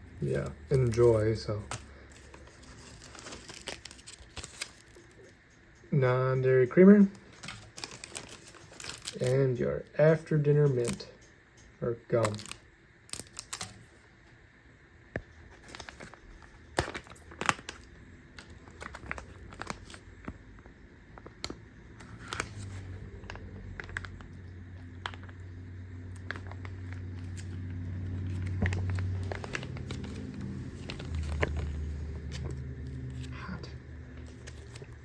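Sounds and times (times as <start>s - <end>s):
steady low hum: 0.0s - 35.0s
plastic pouches crinkling and tearing: 0.2s - 5.4s, 7.0s - 9.4s, 12.2s - 14.0s, 15.4s - 20.6s, 21.2s - 25.5s, 26.1s - 35.0s.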